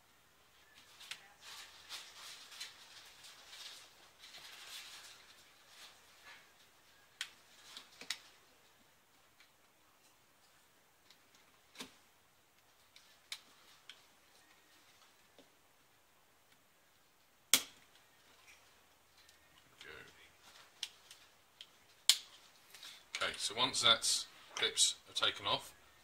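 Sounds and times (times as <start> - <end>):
plastic clips popping: 17.5 - 17.8.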